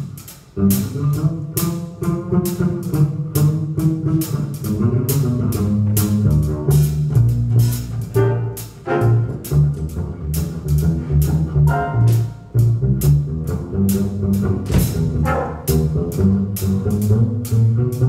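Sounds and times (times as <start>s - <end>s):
bass line: 0.0s - 18.0s
jazz ensemble playing: 0.0s - 18.0s
horn chords: 8.0s - 9.6s, 11.6s - 12.8s, 14.8s - 16.4s.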